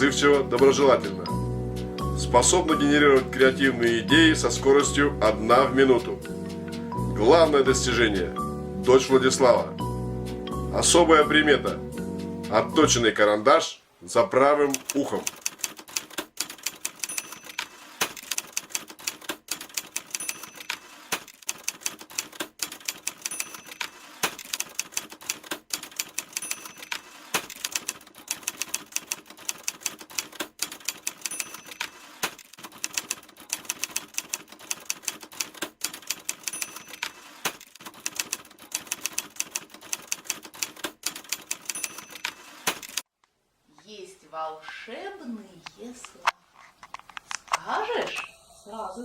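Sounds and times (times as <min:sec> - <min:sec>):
typewriter key strikes clattering: 0:14.8 - 0:43.0.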